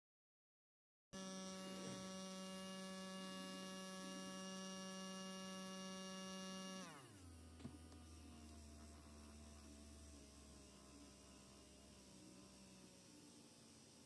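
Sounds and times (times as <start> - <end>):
washing machine motor whining: 1.2 - 10.5.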